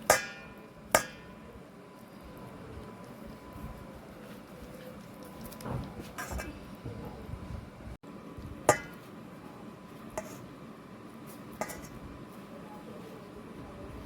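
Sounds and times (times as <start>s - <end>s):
dishes and utensils clinking: 0.0s - 1.4s, 6.2s - 6.6s, 8.7s - 9.1s, 11.6s - 12.0s.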